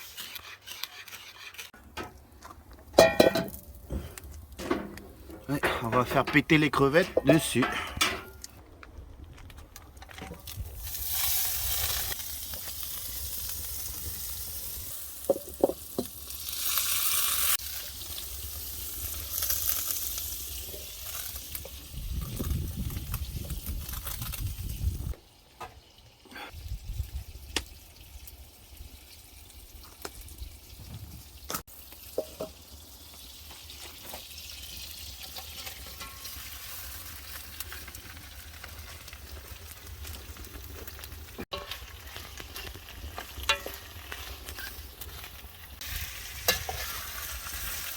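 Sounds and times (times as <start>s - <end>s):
shrimp sizzling in a pan: 10.7s - 25.1s, 31.6s - 39.6s, 40.3s - 47.9s.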